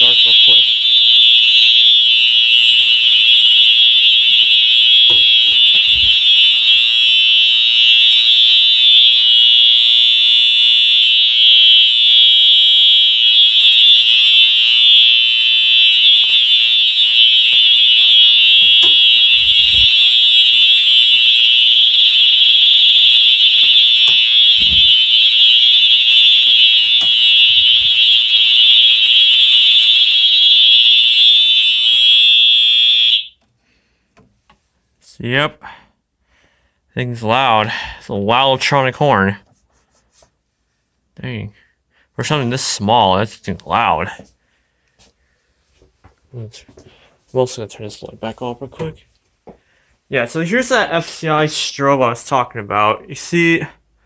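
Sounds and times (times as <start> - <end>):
fire alarm horn: 0.0 - 33.4.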